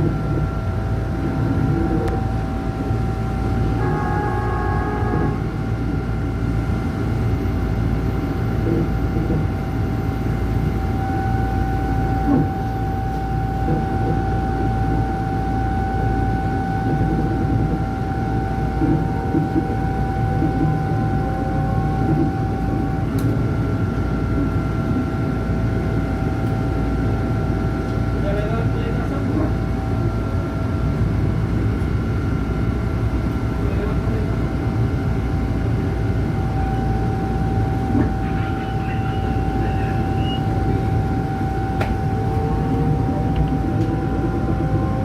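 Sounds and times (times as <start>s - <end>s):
constant whine: 0.0s - 45.0s
higher steady tone: 2.6s - 6.5s, 36.3s - 45.0s.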